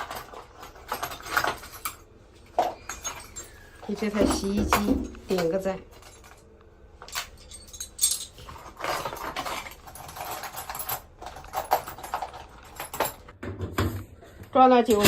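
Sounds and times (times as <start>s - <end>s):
tools clicking and knocking: 0.0s - 3.5s.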